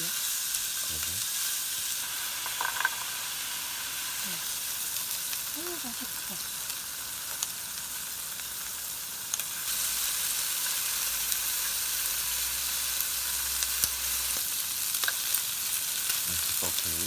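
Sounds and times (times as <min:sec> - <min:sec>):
meat sizzling in a frying pan: 0:00.0 - 0:17.0
small pops of frying fat: 0:02.0 - 0:03.6, 0:06.6 - 0:09.9, 0:13.0 - 0:16.9.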